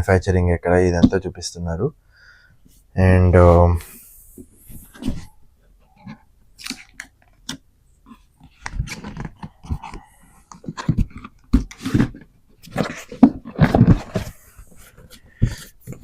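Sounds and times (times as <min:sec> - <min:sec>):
packaging rustling and scraping: 0:08.1 - 0:16.0.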